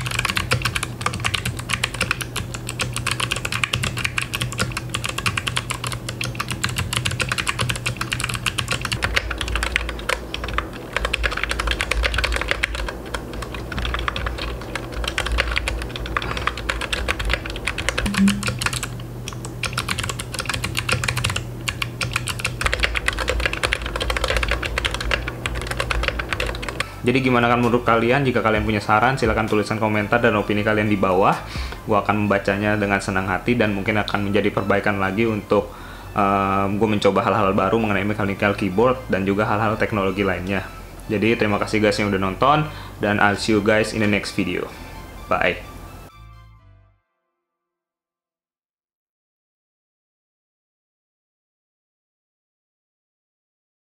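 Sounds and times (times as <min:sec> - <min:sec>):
mechanical keyboard typing: 0:00.0 - 0:26.9.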